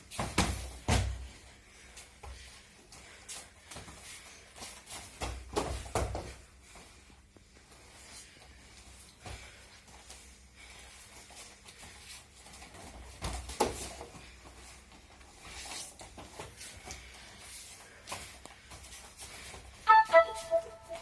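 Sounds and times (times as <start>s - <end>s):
thumps on a mat: 0.1s - 1.2s, 5.2s - 6.4s.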